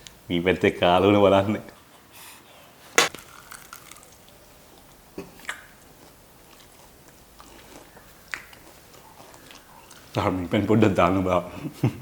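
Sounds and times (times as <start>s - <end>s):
person chewing: 3.0s - 4.2s, 4.8s - 10.2s.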